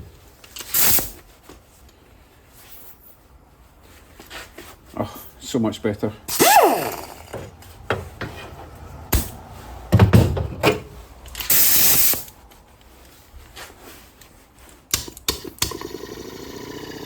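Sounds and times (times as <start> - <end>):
compressed air hiss: 0.6 - 1.2, 11.4 - 12.3.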